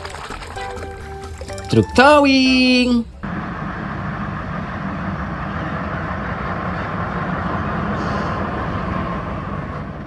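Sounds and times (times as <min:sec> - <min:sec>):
running water: 0:00.0 - 0:03.2.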